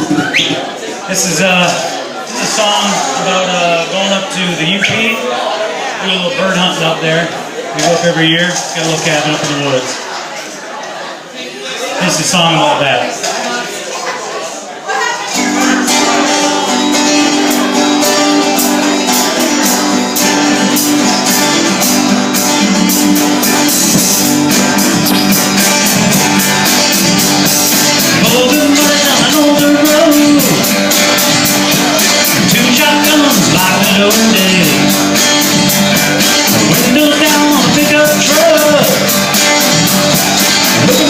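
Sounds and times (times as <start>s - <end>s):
rock band playing: 15.3s - 41.0s.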